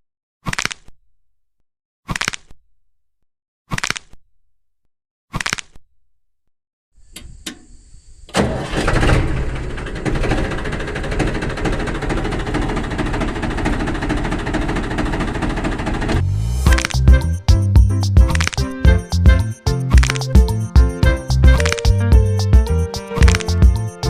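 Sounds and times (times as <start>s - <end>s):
small engine running: 8.3s - 16.7s
clicks: 16.7s - 17.0s, 18.3s - 18.7s, 19.9s - 20.5s, 21.6s - 22.0s, 23.2s - 23.8s.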